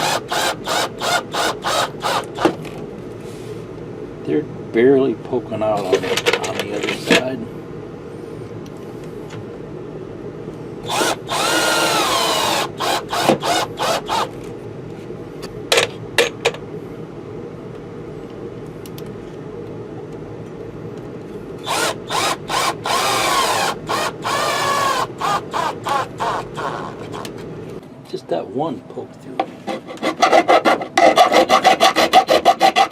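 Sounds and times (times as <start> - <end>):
power drill driving screws: 0.0 - 2.5, 10.9 - 14.3, 21.6 - 27.2.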